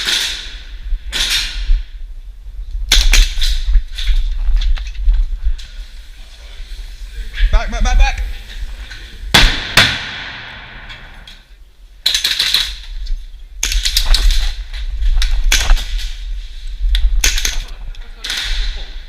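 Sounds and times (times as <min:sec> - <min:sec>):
airsoft gun shots ringing: 0:09.3 - 0:11.3.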